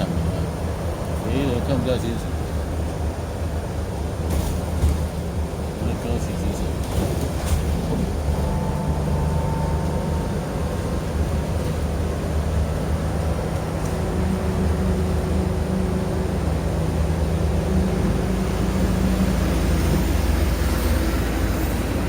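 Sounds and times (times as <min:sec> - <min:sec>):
bus interior hum and road noise: 0:00.0 - 0:22.0.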